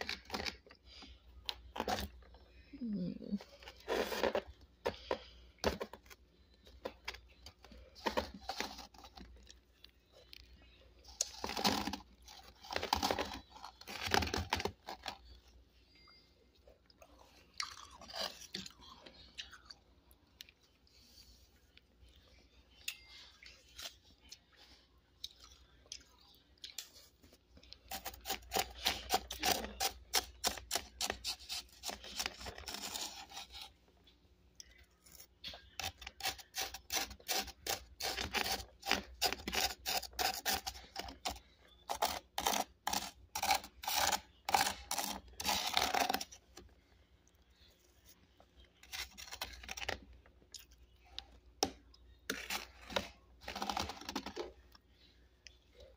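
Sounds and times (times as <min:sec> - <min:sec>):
person chewing crunchy frost: 0:00.0 - 0:15.5, 0:16.6 - 0:21.1, 0:21.7 - 0:33.8, 0:34.6 - 0:51.4.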